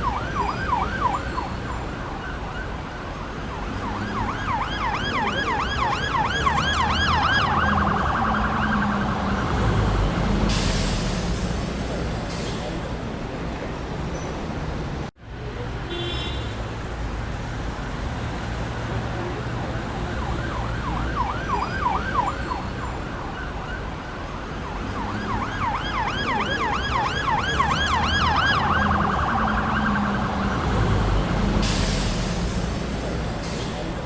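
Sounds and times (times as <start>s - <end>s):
emergency siren yelping: 0.0s - 10.3s, 19.9s - 31.2s
road traffic rumble: 0.0s - 34.0s.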